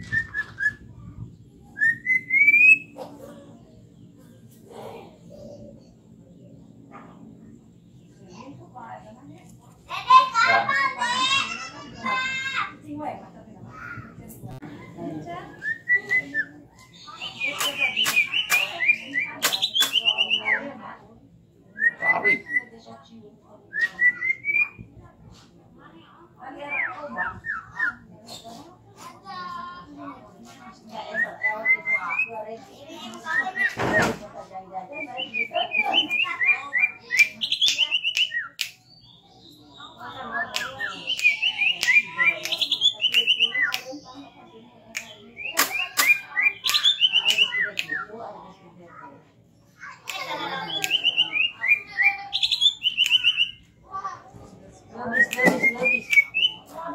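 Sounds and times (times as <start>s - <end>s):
bird singing whistled notes: 0.0s - 0.8s, 1.7s - 3.0s, 35.1s - 44.1s, 45.1s - 48.1s, 50.6s - 53.6s, 55.1s - 56.7s.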